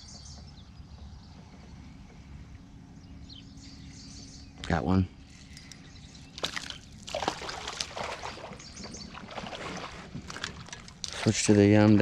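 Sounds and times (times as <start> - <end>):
water splashing and sloshing: 5.4 - 11.8.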